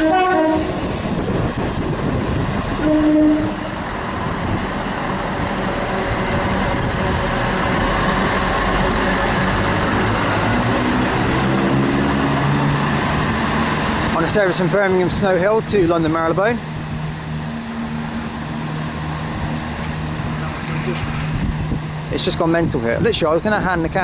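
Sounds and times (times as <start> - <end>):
train horn blast: 0.0 - 1.0, 2.8 - 3.8
diesel train passing: 0.0 - 24.0.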